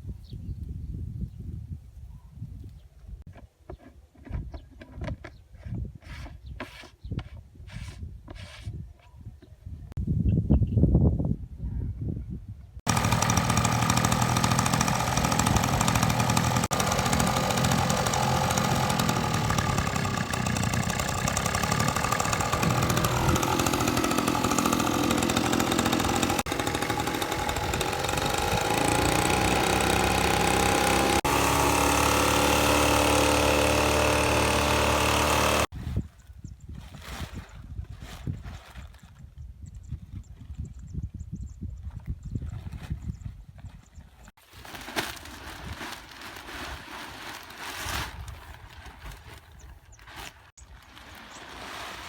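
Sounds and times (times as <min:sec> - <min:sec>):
engine running: 0:12.9 - 0:35.7.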